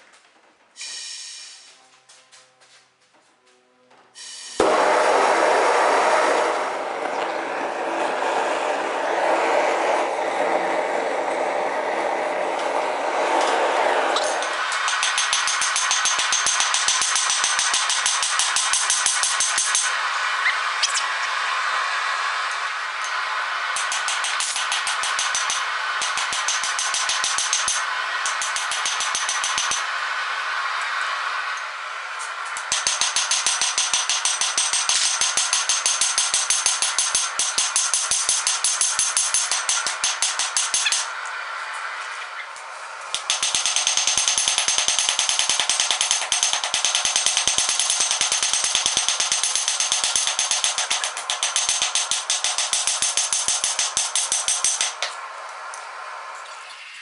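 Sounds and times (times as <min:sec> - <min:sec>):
steady rushing noise: 0:04.6 - 0:17.8
power hammer pounding steel: 0:04.6 - 0:31.6, 0:32.2 - 0:42.0, 0:43.1 - 0:55.3.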